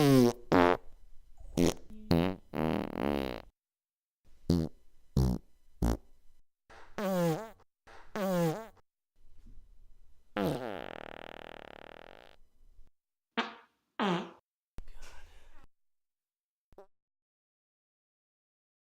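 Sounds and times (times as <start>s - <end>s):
farts: 0.0s - 0.8s, 1.6s - 3.6s, 4.5s - 6.1s, 6.9s - 8.8s, 10.4s - 12.4s, 13.4s - 14.4s.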